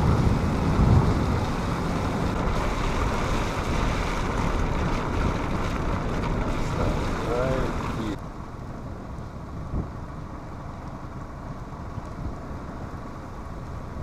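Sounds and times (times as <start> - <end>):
wind buffeting microphone: 0.0 - 10.2
vehicle rumble: 0.0 - 14.0.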